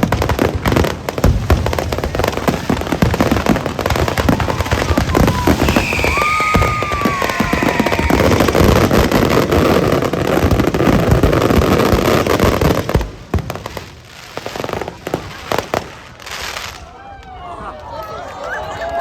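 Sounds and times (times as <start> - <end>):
fireworks bangs and crackling: 0.0 - 18.0
firework whistling: 1.2 - 11.8.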